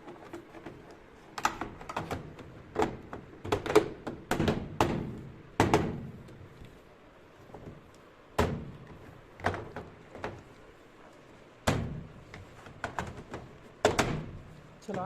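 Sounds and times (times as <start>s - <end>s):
washing machine parts knocking: 1.4s - 6.4s, 8.4s - 10.5s, 11.6s - 15.0s.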